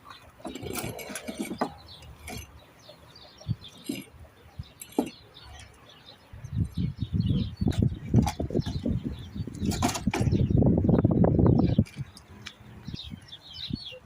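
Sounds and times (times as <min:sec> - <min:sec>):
birds chirping: 0:00.0 - 0:14.0.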